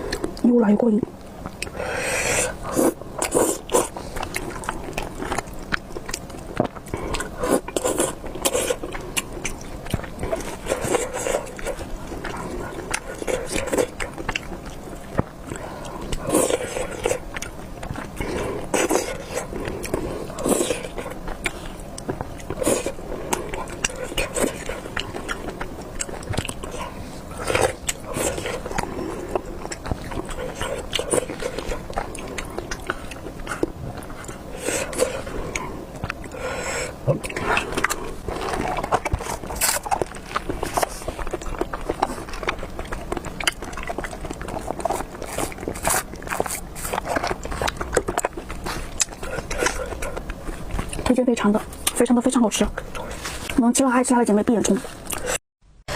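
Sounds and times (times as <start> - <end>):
wet chewing with mouth clicks: 0.0 - 55.4
noodle slurping: 1.6 - 5.8.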